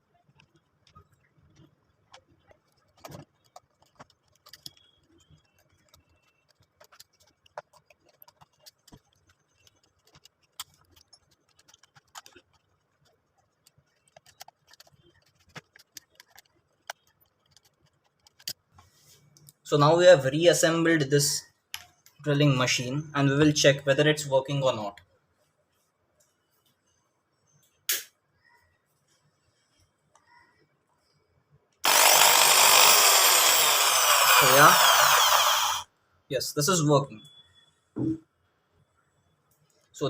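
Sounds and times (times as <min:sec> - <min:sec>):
plastic and metal parts clicking: 0:00.3 - 0:18.8.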